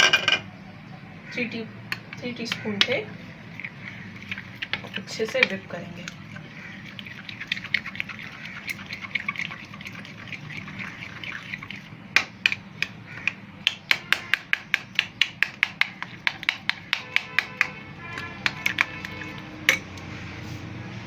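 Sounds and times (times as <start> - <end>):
whisk clicking against bowl: 1.9 - 20.0
wet whisking scrape: 2.5 - 20.6.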